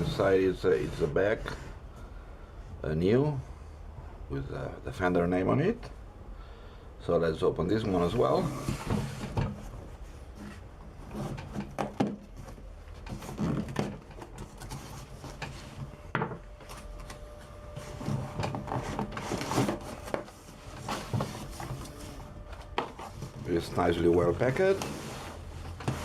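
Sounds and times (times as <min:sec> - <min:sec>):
rustling of packing: 0:08.2 - 0:26.0.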